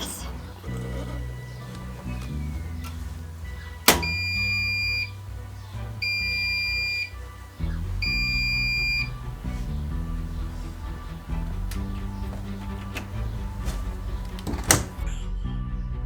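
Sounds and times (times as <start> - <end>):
background music: 0.0 - 16.0
appliance beeper high beeps: 3.9 - 5.2, 6.0 - 7.2, 8.0 - 9.1.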